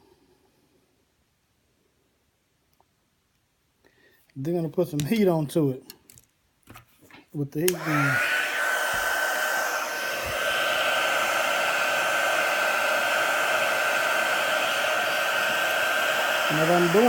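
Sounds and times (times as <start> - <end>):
heat gun blowing hot air: 7.6 - 17.0.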